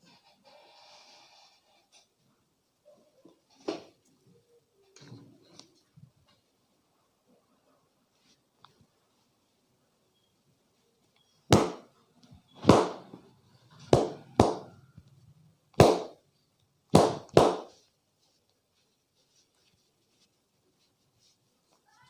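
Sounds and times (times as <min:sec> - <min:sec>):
sharp hand slaps: 0:15.8 - 0:16.2.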